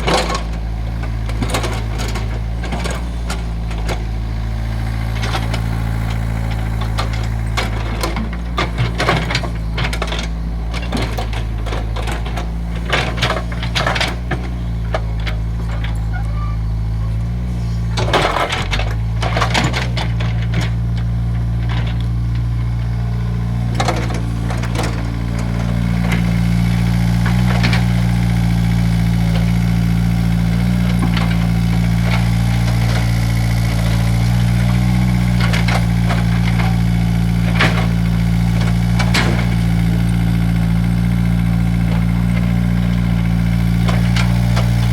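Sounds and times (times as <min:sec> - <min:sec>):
excavator diesel engine running: 0:00.0 - 0:44.9
knocks and clanks: 0:05.2 - 0:16.4, 0:17.9 - 0:22.8, 0:23.4 - 0:40.5.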